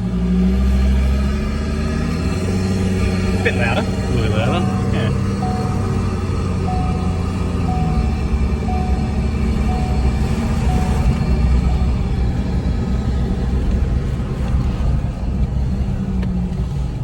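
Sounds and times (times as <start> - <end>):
engine rumbling at cruising speed: 0.0 - 17.0
short beeps: 4.4 - 12.4.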